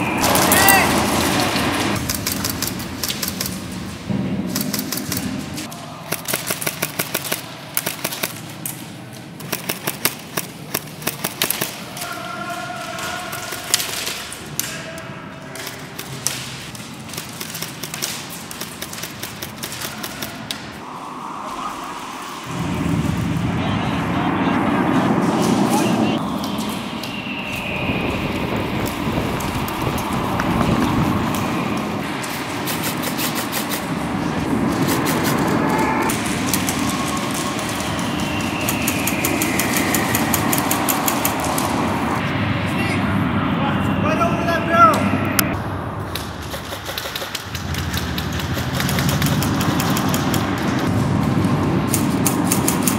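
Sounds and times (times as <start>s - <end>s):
constant rumbling background: 0.0s - 52.9s
airsoft gunfire: 0.2s - 8.5s, 9.4s - 14.3s, 17.1s - 20.5s.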